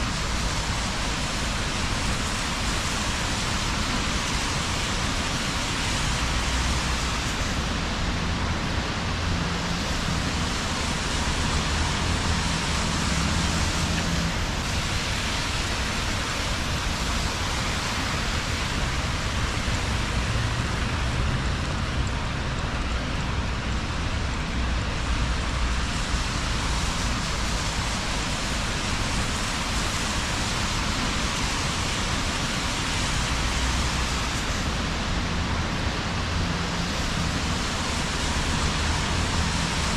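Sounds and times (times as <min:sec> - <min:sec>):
passing traffic rumble: 0:00.0 - 0:39.9
rain on wet street: 0:00.0 - 0:39.9.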